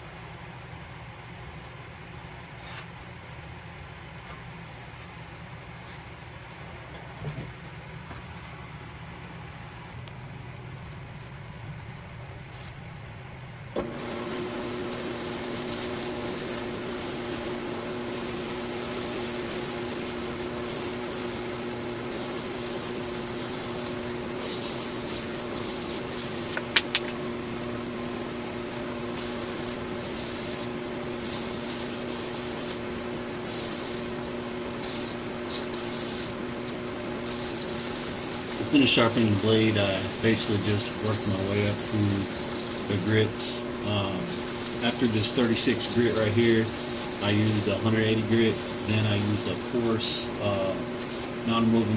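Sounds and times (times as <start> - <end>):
belt grinder humming: 13.8 - 51.9
blade grinding hiss: 14.7 - 27.8, 28.5 - 51.9.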